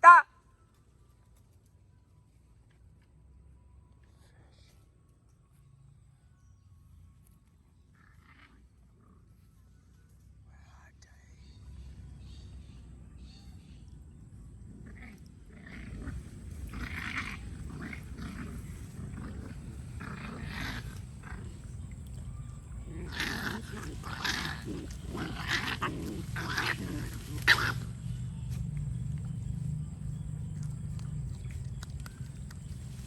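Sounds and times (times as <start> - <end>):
otter harsh calls: 22.8 - 28.1.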